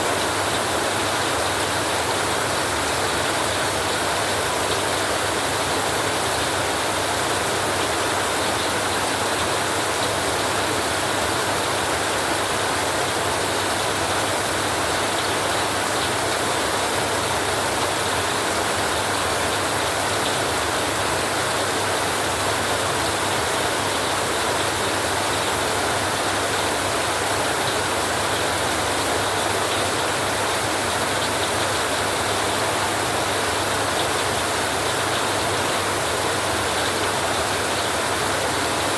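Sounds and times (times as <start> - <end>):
heavy rain on a metal roof: 0.0 - 38.9.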